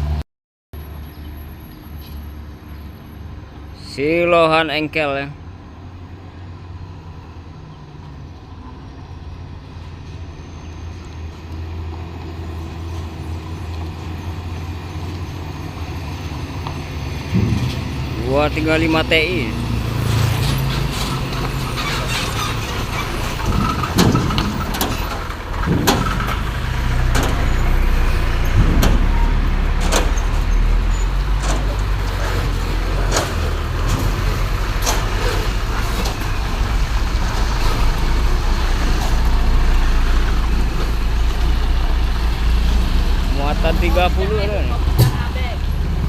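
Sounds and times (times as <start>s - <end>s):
diesel truck engine rumble: 5.0s - 46.0s
tyre noise on road: 5.4s - 46.0s
sharp clicks and knocks: 20.8s - 27.5s, 28.5s - 29.1s.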